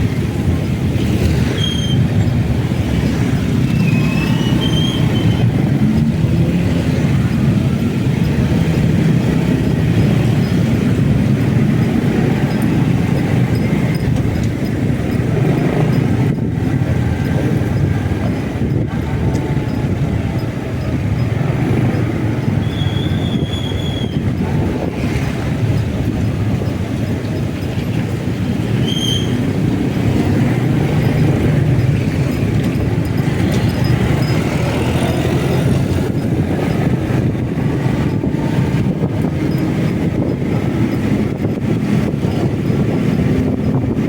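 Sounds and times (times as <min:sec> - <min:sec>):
motorcycle riding rumble: 0:00.0 - 0:44.0
brief high squeal: 0:22.6 - 0:24.2, 0:28.8 - 0:29.4.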